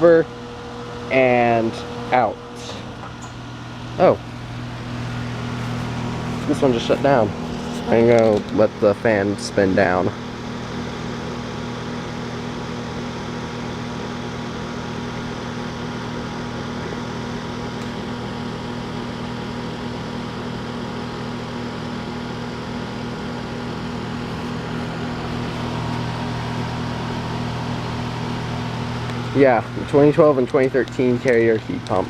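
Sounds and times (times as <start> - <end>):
heat pump unit humming: 0.0 - 32.0.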